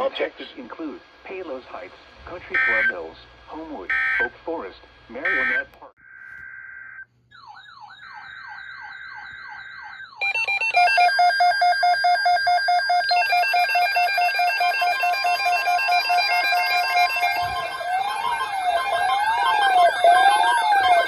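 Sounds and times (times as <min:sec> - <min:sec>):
buzzing data bursts: 0:02.4 - 0:03.1, 0:03.9 - 0:07.0
pulsing electronic alarm: 0:02.5 - 0:03.1, 0:03.9 - 0:04.3, 0:05.2 - 0:21.0.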